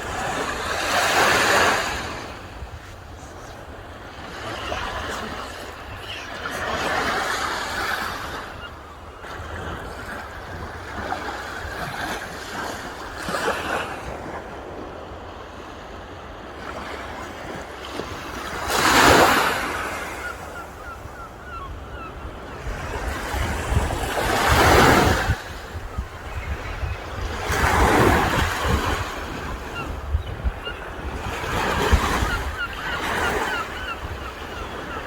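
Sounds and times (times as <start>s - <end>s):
waves breaking: 0.0s - 15.9s, 16.5s - 35.0s
sea waves washing ashore: 0.0s - 35.0s
wind rumble on microphone: 21.8s - 33.0s.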